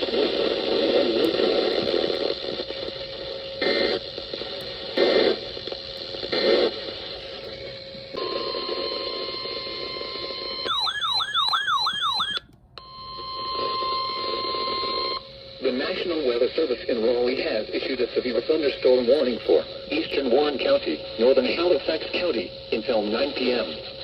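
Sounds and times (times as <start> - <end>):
radio hiss: 0.0 - 10.6, 13.6 - 24.0
steady alarm tone: 7.3 - 16.4
fast siren-like warble: 10.7 - 12.4.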